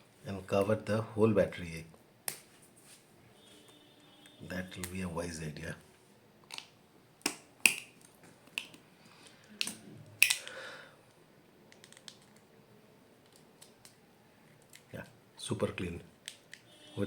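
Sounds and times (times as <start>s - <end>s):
tape snapping and crackling: 11.7s - 12.4s, 13.2s - 14.0s.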